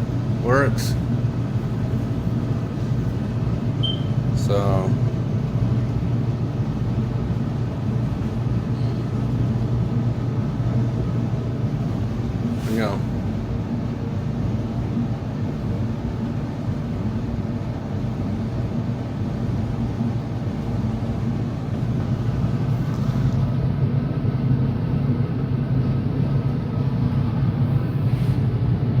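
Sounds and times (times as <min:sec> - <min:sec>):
clothes dryer humming: 0:00.0 - 0:29.0.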